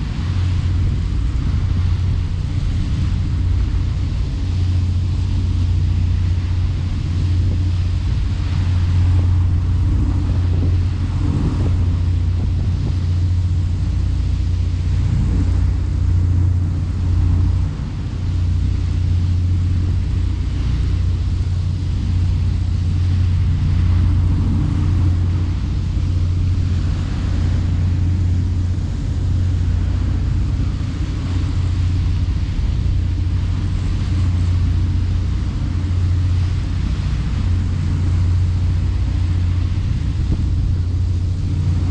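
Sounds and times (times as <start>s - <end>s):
boat engine droning: 0.0s - 41.9s.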